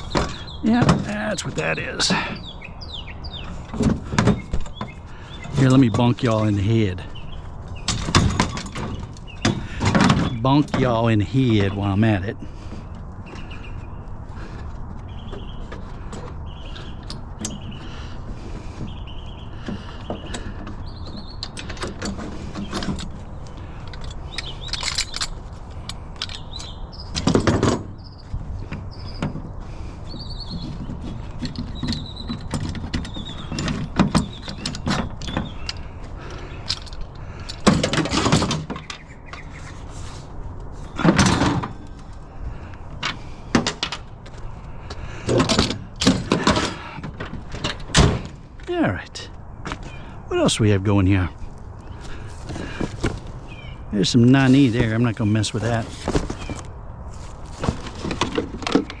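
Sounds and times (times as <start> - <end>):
birds chirping: 0.0 - 59.0
scrap metal knocking and clattering: 45.3 - 48.3.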